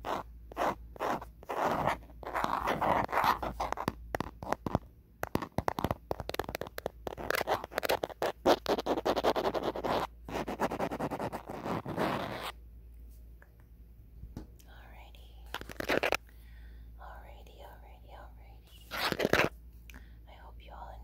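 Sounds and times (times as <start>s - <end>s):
fingernails scratching on phone: 0.0s - 12.5s, 15.6s - 16.2s, 18.8s - 19.5s
fingernails tapping on phone: 3.7s - 7.0s.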